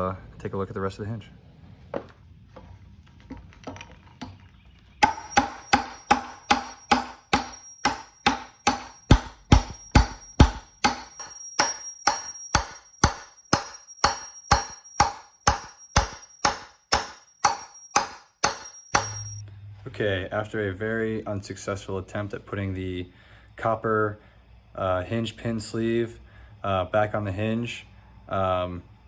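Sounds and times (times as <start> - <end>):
hammer striking metal: 5.0 - 19.4.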